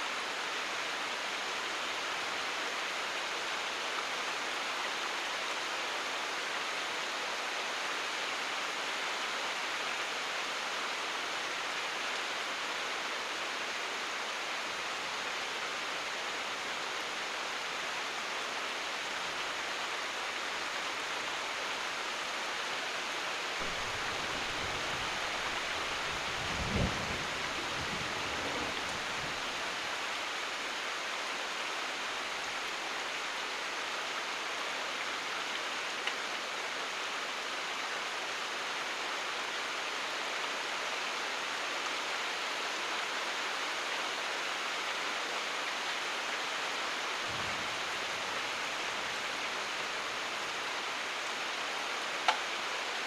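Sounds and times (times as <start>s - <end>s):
steady rain hiss: 0.0s - 53.0s
distant thunder rumble: 23.6s - 29.5s.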